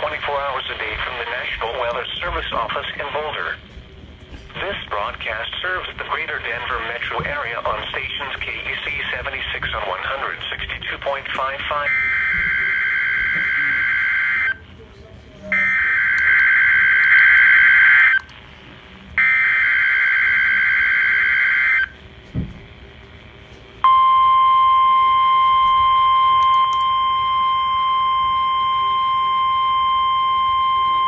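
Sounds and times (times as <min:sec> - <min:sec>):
steady warning alarm tone: 0:11.5 - 0:14.6, 0:15.5 - 0:18.3, 0:19.2 - 0:22.0, 0:23.8 - 0:31.0.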